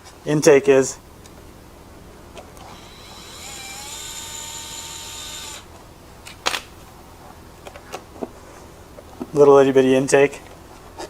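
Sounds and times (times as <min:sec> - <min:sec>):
small electric motor whirring: 0:02.6 - 0:05.8.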